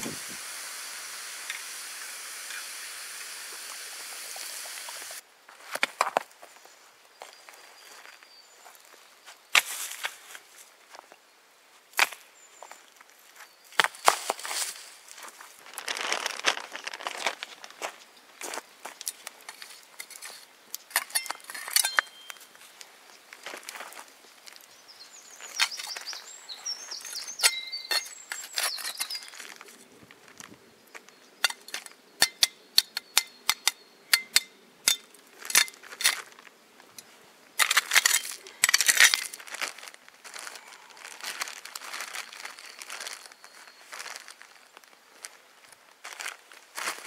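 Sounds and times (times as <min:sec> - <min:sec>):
bags crinkling and rustling: 0:14.0 - 0:18.1, 0:37.6 - 0:47.0
small hard items clicking: 0:37.6 - 0:39.4.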